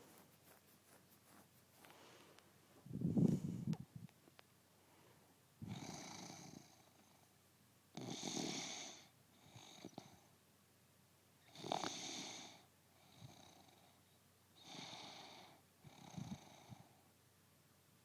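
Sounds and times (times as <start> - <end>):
soft breaths: 0.0 - 4.0, 4.7 - 7.4
woman snoring: 5.6 - 6.6, 8.0 - 9.0, 11.5 - 12.6.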